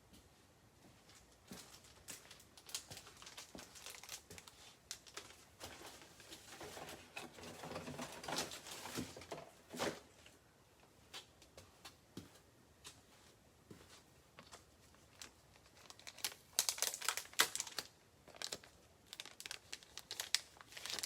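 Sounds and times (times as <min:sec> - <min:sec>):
plastic wrapping crinkling and tearing: 0:01.6 - 0:09.4, 0:15.0 - 0:21.0.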